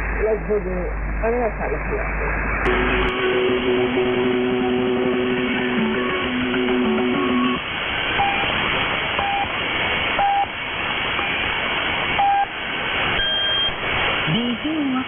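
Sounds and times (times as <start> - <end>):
static hiss: 0.0 - 15.0
time signal pips: 8.2 - 8.6, 9.2 - 9.5, 10.2 - 10.6, 12.2 - 12.6, 13.2 - 13.8.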